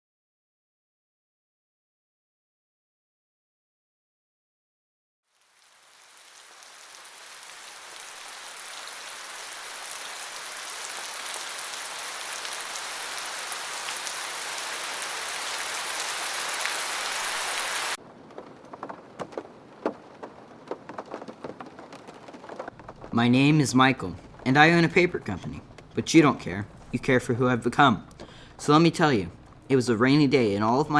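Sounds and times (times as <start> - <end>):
light rain with scattered drops: 5.2 - 30.9
heavy rain: 5.3 - 27.0.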